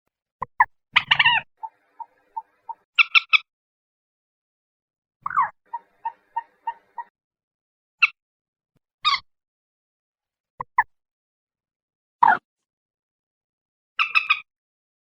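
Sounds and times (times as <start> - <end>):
moorhen calling: 0.5 - 3.3, 5.2 - 7.1
moorhen clucks: 0.5 - 3.4, 5.3 - 7.1.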